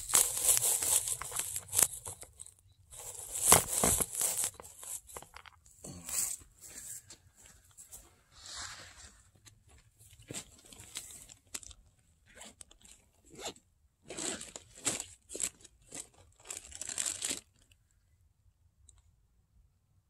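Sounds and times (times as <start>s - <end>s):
rough rustling and crunching: 0.0s - 13.4s.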